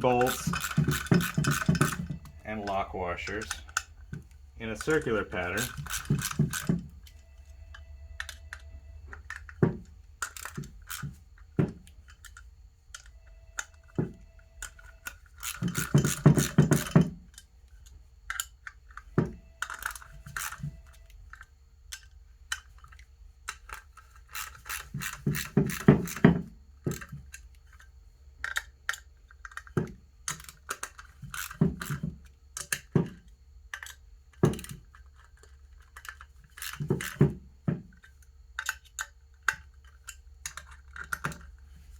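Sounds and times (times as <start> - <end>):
ratchet clicking: 0.0 - 2.2, 3.2 - 8.6, 10.2 - 20.7, 21.3 - 27.8
tool taps: 0.2 - 7.0, 10.5 - 11.9, 36.8 - 38.0.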